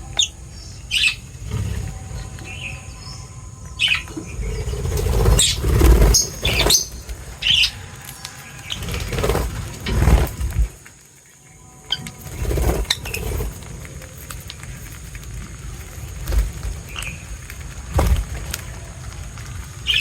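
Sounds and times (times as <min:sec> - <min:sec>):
high bird chirps: 0:00.0 - 0:09.1.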